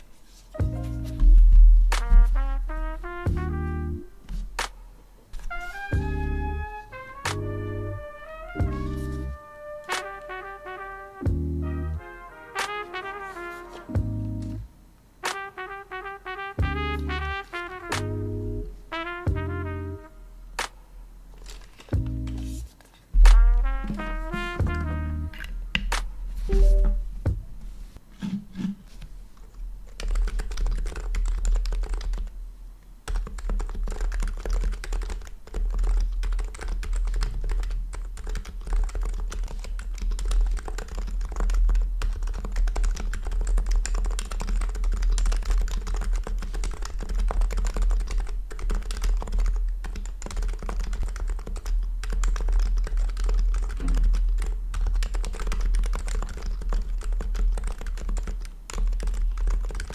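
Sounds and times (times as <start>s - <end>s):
keyboard typing: 21.4s - 27.1s, 29.9s - 32.3s, 33.1s - 59.9s.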